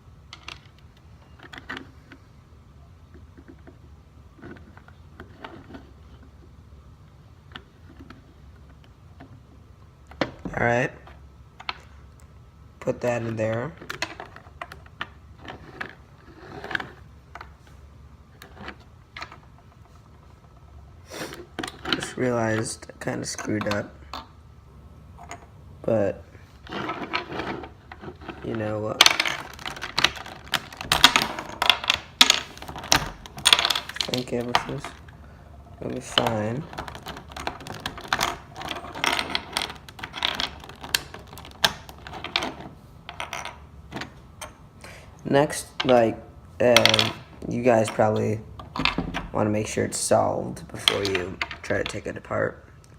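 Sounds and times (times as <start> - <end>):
plastic scrape: 15.4 - 17.0, 26.5 - 31.7
plastic pieces clicking and knocking: 26.7 - 35.2, 35.8 - 44.5, 45.8 - 49.3, 50.6 - 52.1
plastic puzzle cube clicking: 36.0 - 42.6.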